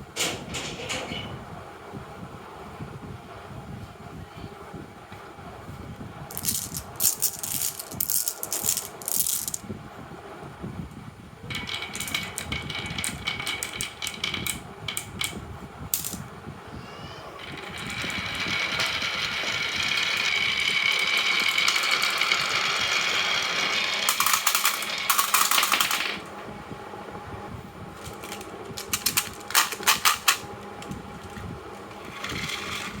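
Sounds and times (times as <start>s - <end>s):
marble rolling whir: 6.3s - 9.6s, 11.5s - 16.2s, 17.4s - 26.4s, 27.9s - 33.0s
marbles clacking on wood: 6.3s - 9.6s, 11.5s - 15.4s, 16.0s - 16.2s, 23.7s - 26.2s, 28.0s - 32.9s.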